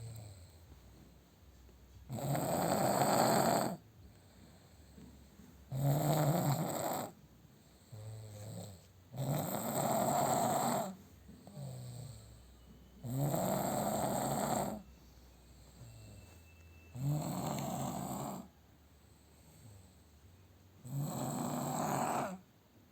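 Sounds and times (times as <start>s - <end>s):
person snoring: 2.1s - 3.8s, 5.7s - 7.2s, 7.9s - 12.3s, 13.0s - 14.8s, 17.0s - 18.5s, 20.8s - 22.4s.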